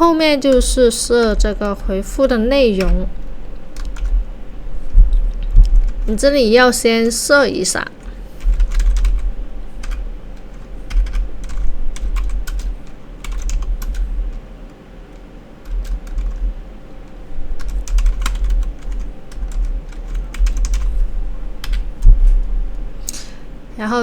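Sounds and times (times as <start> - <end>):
low rumble: 0.0 - 7.0, 8.0 - 14.5, 15.6 - 23.8
typing on keyboard: 0.4 - 4.2, 7.0 - 21.0, 21.6 - 22.4.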